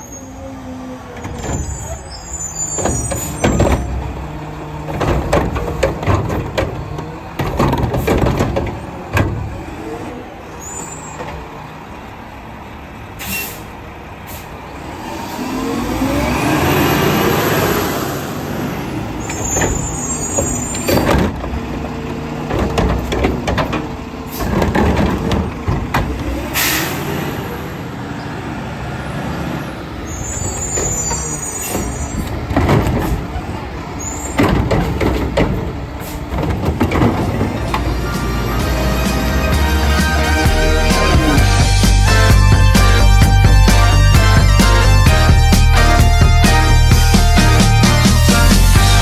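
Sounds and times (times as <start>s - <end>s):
diesel engine revving: 0.0s - 49.0s
air-brake hisses: 13.2s - 14.6s, 26.2s - 27.3s.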